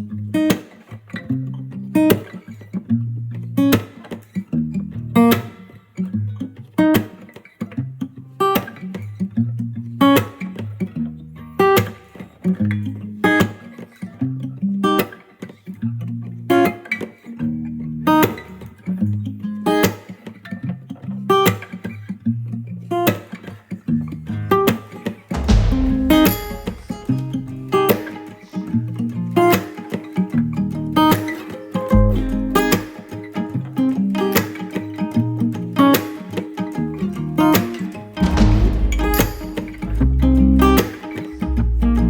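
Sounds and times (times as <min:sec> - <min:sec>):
plucked guitar notes: 0:25.3 - 0:42.0
low bass line: 0:32.0 - 0:32.7, 0:38.2 - 0:40.8, 0:41.4 - 0:42.0.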